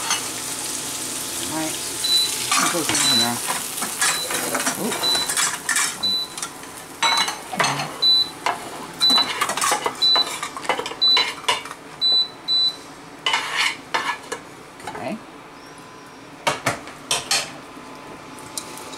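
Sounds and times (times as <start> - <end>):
metal utensil scraping a pan: 13.3 - 14.3.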